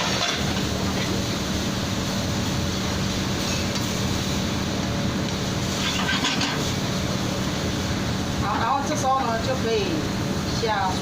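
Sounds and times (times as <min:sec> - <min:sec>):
meat sizzling in a pan: 0:00.0 - 0:08.0
constant low hum: 0:00.0 - 0:11.0.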